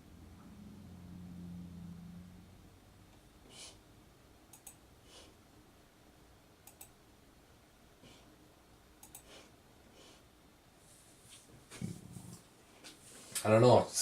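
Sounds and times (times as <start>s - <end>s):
computer mouse clicks: 4.5s - 4.8s, 6.6s - 7.0s, 9.0s - 9.3s
soft rustles: 10.8s - 13.6s.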